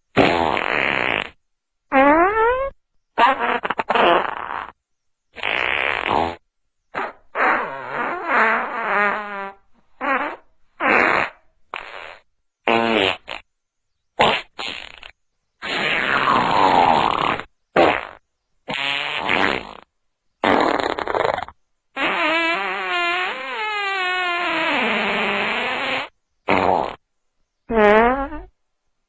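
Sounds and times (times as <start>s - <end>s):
fart sound effects: 0.1s - 4.8s, 5.4s - 13.5s, 14.2s - 27.0s, 27.7s - 28.6s.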